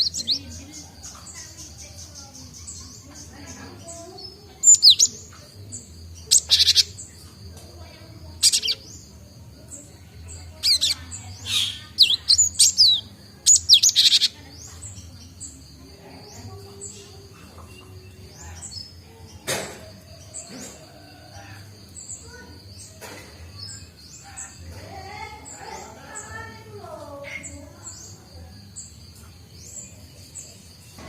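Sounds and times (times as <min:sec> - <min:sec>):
bird calling sharp high chirps: 0:00.0 - 0:00.7, 0:04.0 - 0:05.4, 0:06.2 - 0:07.2, 0:08.4 - 0:09.1, 0:10.4 - 0:14.4
faint repeated high chirping: 0:00.0 - 0:07.2, 0:07.8 - 0:08.9.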